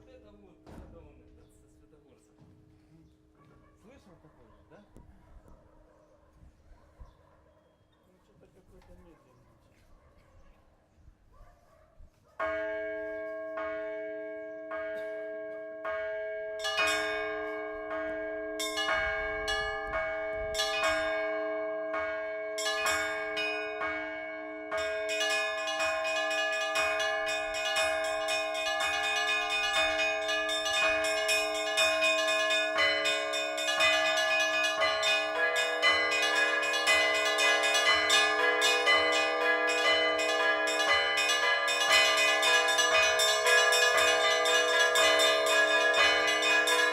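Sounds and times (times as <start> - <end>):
large church bells tolling: 12.4 - 46.9
small bells chiming rapidly: 24.8 - 46.9.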